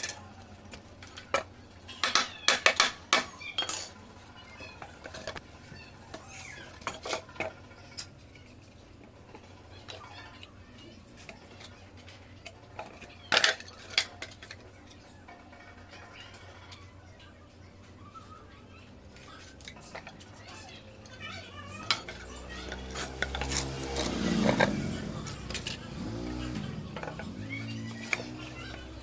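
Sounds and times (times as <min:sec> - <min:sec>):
small hard objects clinking: 0:06.1 - 0:17.3, 0:18.1 - 0:29.0.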